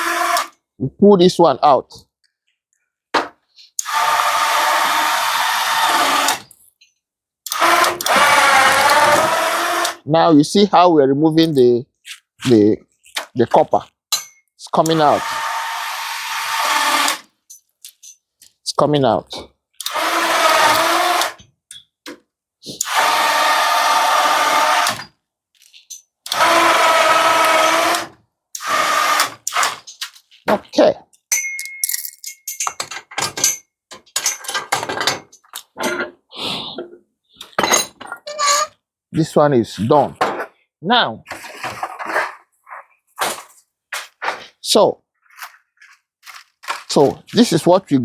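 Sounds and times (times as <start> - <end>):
electric winch humming under load: 0.0 - 0.5, 3.8 - 6.4, 7.6 - 10.0, 14.9 - 17.2, 19.9 - 21.4, 22.8 - 25.0, 26.3 - 29.7.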